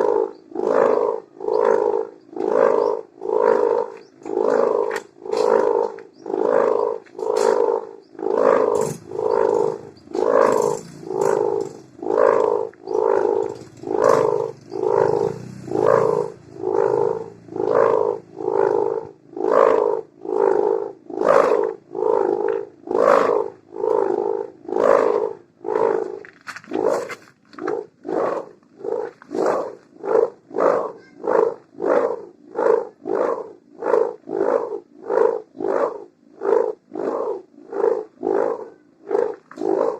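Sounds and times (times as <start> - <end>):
kite hummer droning: 8.6 - 20.1.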